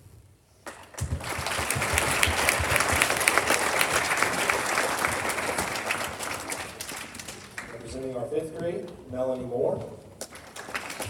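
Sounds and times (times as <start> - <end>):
audience clapping: 0.6 - 8.6, 10.2 - 11.0.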